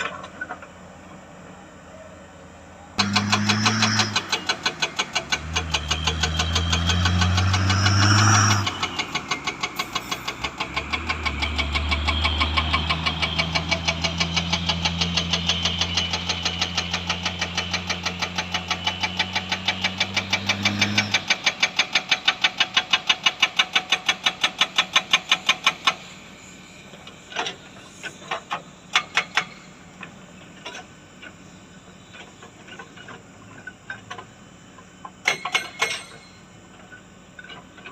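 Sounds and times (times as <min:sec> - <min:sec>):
diesel engine working under load: 0:00.0 - 0:37.9
hydraulic breaker hammering rock: 0:28.2 - 0:29.7, 0:35.2 - 0:36.5.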